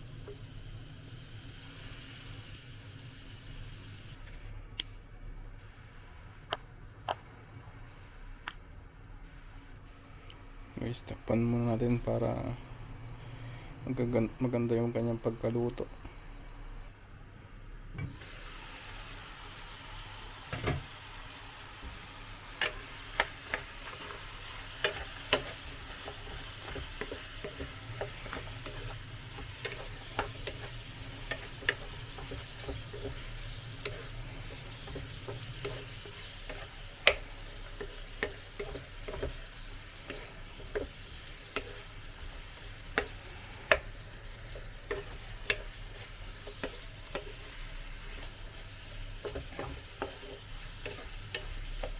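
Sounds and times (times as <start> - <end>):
chicken sizzling in a pan: 0.0 - 4.2, 17.6 - 51.9
frying pops and crackles: 0.0 - 4.8, 17.9 - 51.9.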